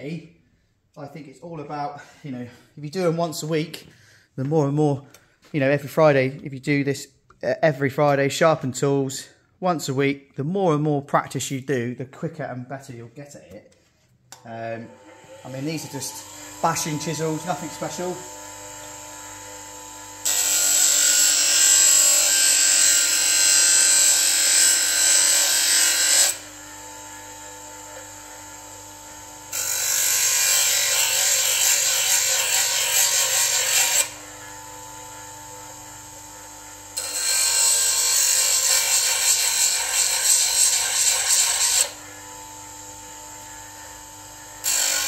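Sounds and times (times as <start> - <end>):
bench grinder motor hum: 14.7 - 45.0
chisel grinding on wheel: 29.6 - 34.2, 37.0 - 42.0, 44.6 - 45.0.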